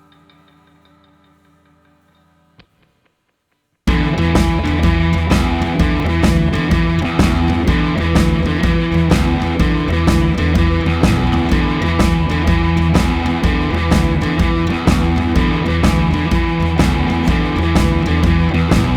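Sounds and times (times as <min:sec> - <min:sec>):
loud rock music: 0:03.9 - 0:18.9.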